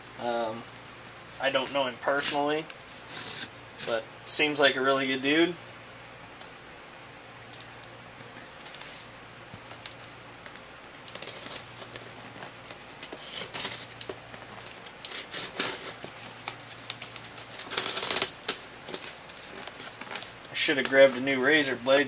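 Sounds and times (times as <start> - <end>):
knife cutting packing tape: 14.9 - 20.3.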